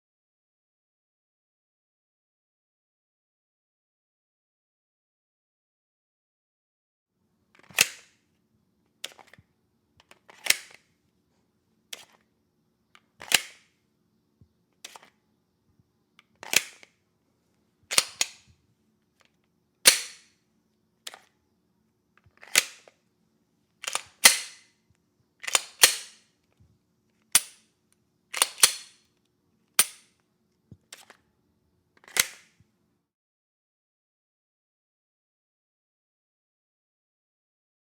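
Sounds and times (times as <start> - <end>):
pistol metallic clicks: 7.7 - 8.2, 10.4 - 10.8, 13.2 - 13.7, 16.4 - 16.9, 17.9 - 18.5, 19.9 - 20.3, 22.4 - 23.0, 23.8 - 24.7, 25.4 - 26.2, 27.3 - 27.7, 28.3 - 29.0, 29.8 - 30.2, 32.0 - 32.5.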